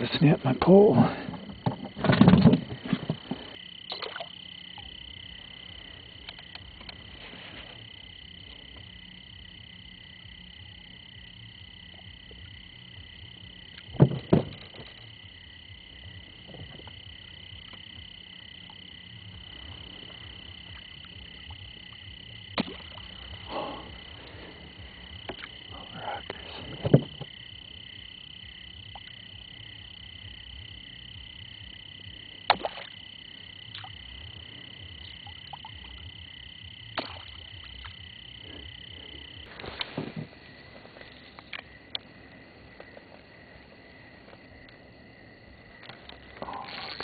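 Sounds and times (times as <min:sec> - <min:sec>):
insects and frogs calling: 0:00.0 - 0:47.0.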